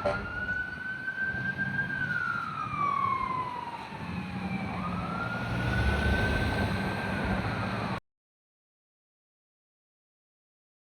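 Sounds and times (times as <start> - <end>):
fire truck siren wailing: 0.0 - 8.0.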